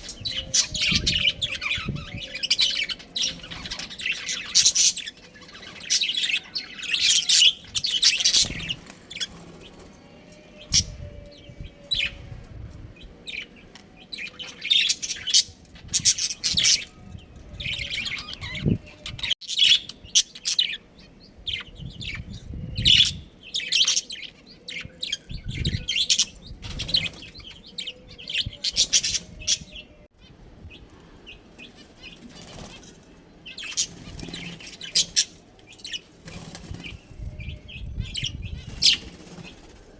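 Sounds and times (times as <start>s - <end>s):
budgerigars chirping: 17.6s - 29.9s.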